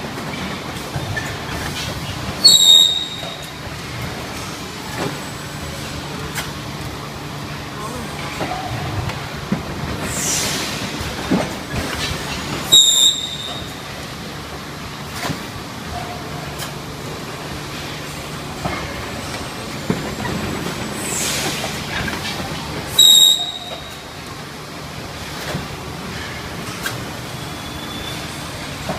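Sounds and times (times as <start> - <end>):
short high-pitched whistle: 2.4 - 3.5, 12.7 - 13.8, 23.0 - 24.0
pneumatic hiss: 10.0 - 11.1, 20.8 - 24.0.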